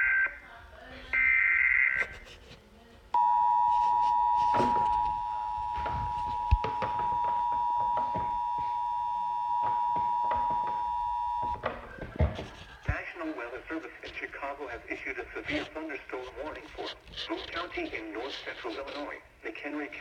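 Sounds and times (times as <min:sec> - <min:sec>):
two-tone attention signal: 0:03.2 - 0:11.6.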